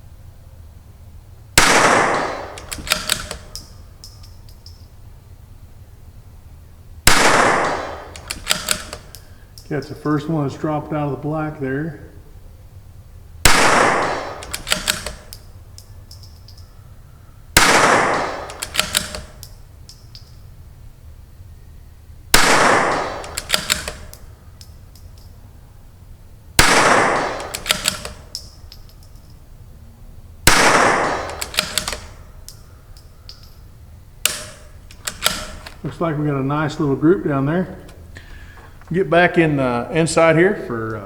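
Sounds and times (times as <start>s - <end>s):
rifle shots with echo: 1.6s - 3.7s, 7.0s - 9.1s, 13.4s - 15.3s, 17.6s - 19.4s, 22.3s - 24.2s, 26.6s - 28.3s, 30.4s - 32.3s, 34.2s - 36.8s
rifle bolt clicking: 2.1s - 4.8s, 7.7s - 9.8s, 14.2s - 16.7s, 18.4s - 20.3s, 23.0s - 25.3s, 26.6s - 29.4s, 30.5s - 33.6s, 34.2s - 35.9s.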